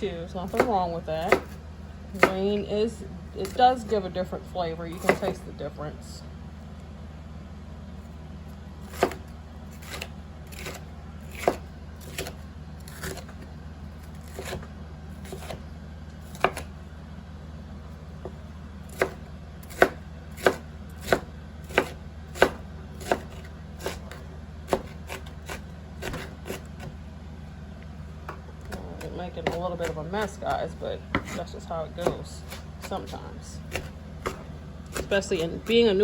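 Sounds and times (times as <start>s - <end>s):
low steady hum: 0.0s - 36.0s
knife chopping on cutting board: 0.5s - 1.6s, 2.2s - 2.6s, 5.0s - 5.4s, 8.9s - 13.4s, 14.2s - 15.6s, 16.3s - 16.7s, 18.2s - 26.9s, 28.2s - 36.0s.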